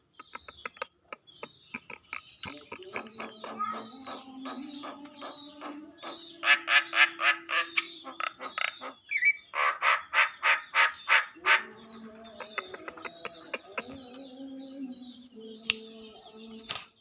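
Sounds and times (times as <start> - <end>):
faint bird clicks and whistles: 0.0 - 6.2, 12.2 - 14.3, 15.1 - 15.9, 16.6 - 17.0
bird harsh rasping calls: 0.0 - 17.0.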